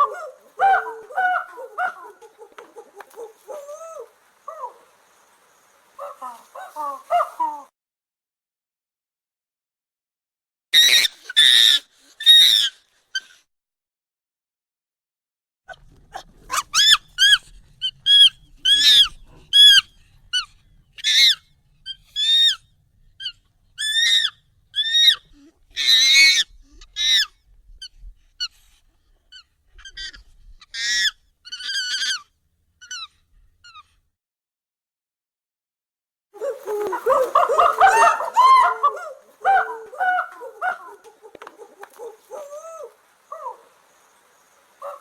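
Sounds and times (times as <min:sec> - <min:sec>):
high-pitched monkey calls: 0:10.8 - 0:13.4, 0:16.5 - 0:22.6, 0:23.2 - 0:28.6, 0:29.3 - 0:33.9, 0:36.4 - 0:43.8, 0:44.8 - 0:45.0.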